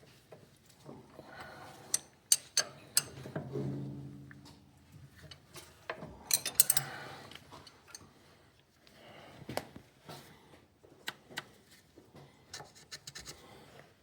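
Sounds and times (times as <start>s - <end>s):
hand tools clinking on metal: 1.8s - 3.3s, 5.3s - 8.0s.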